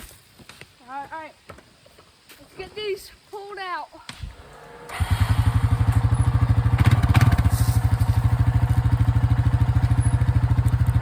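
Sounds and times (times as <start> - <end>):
atv engine idling: 4.4 - 11.0.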